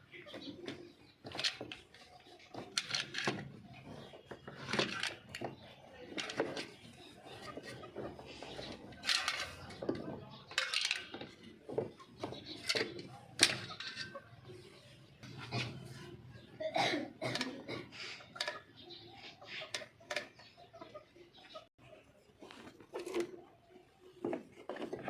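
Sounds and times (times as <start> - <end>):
metal tools clinking: 8.6 - 14.3.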